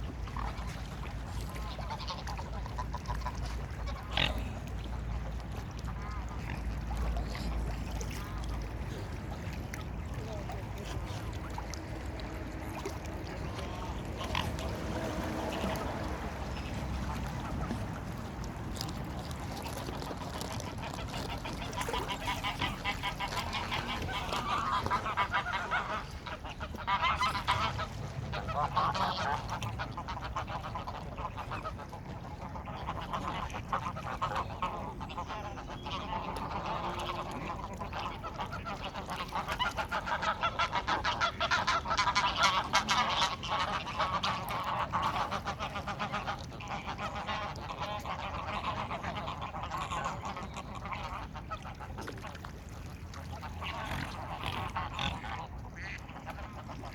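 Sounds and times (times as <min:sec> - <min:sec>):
geese and ducks calling: 0:20.0 - 0:52.4, 0:53.3 - 0:56.9.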